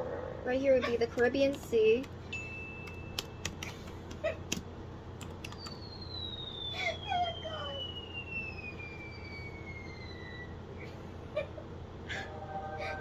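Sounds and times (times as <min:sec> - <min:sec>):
sharp clicks: 0:02.8 - 0:05.8
thin whistle falling in pitch: 0:05.6 - 0:10.6.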